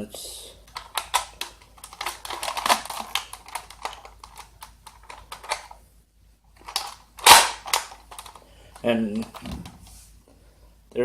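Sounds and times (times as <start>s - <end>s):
plastic clicks loading toy darts: 0.7s - 5.7s, 6.6s - 9.4s.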